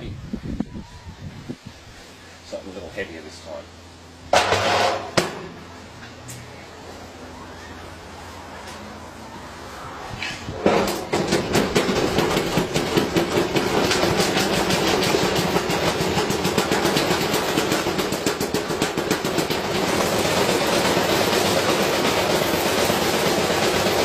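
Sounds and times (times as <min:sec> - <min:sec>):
washing machine running: 0:10.6 - 0:24.0.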